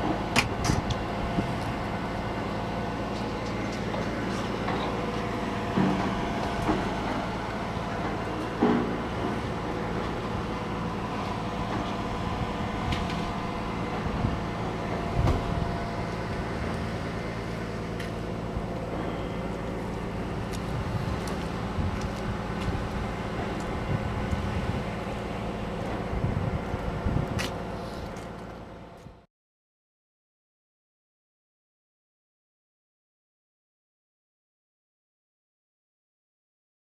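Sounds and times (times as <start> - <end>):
engine running: 0.0 - 29.2.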